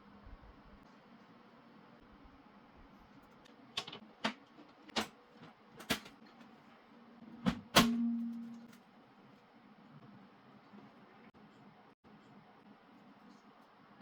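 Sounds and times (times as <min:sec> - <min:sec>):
clicks and knocks of parts handled: 0:03.4 - 0:06.6.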